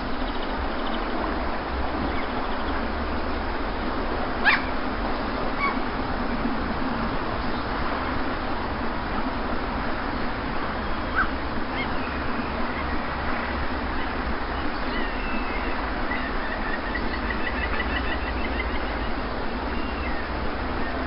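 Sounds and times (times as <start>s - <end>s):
sea waves rushing: 0.0s - 21.0s
faint bird calls: 4.4s - 4.8s, 10.8s - 21.0s
bird chirps: 14.0s - 21.0s.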